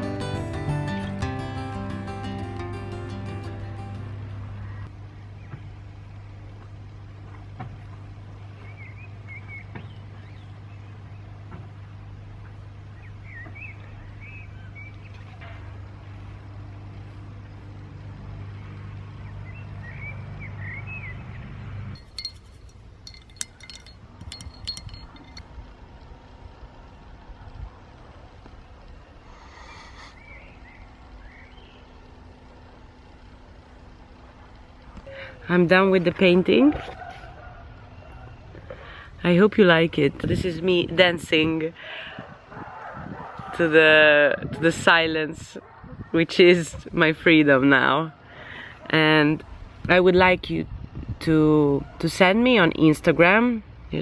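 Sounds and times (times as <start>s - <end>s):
steady low hum: 0.0s - 54.0s
light clinks and taps: 22.0s - 25.5s.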